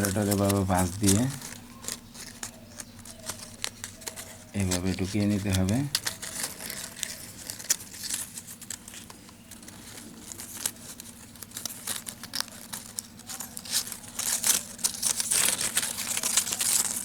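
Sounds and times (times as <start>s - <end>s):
paper separators crinkling and clicking: 0.0s - 17.0s.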